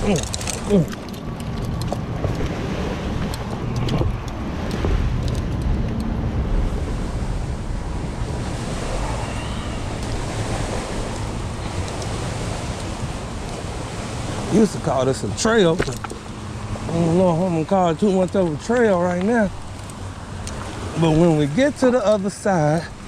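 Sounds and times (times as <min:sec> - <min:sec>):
twigs crackling and snapping: 0:00.0 - 0:02.5, 0:18.2 - 0:20.8
wind buffeting microphone: 0:00.0 - 0:23.0.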